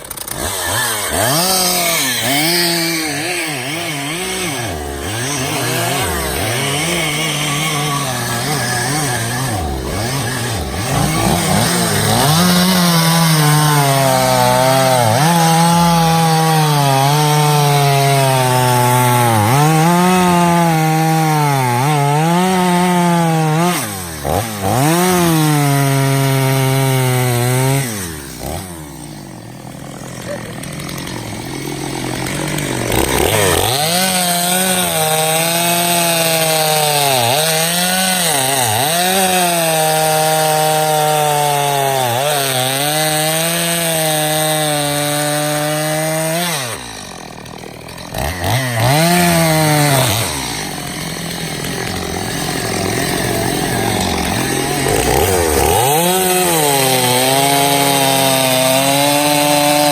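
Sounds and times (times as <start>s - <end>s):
chainsaw cutting wood: 0.0s - 59.9s.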